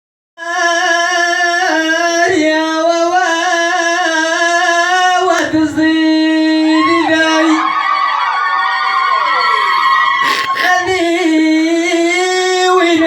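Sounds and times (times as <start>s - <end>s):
person singing held notes: 8.9s - 10.8s.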